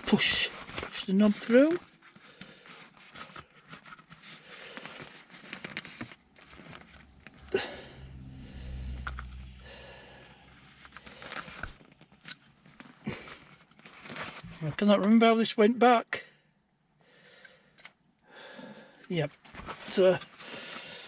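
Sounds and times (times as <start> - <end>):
low steady hum: 6.3 - 13.8.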